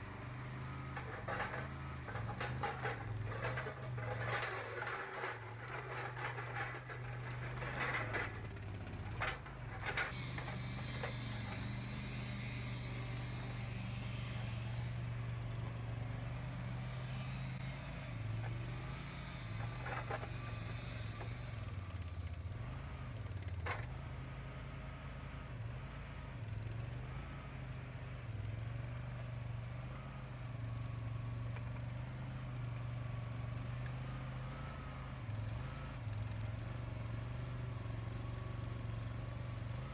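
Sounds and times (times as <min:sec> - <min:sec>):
skid steer engine running: 0:00.0 - 0:39.9
rattling and knocking: 0:00.8 - 0:11.6.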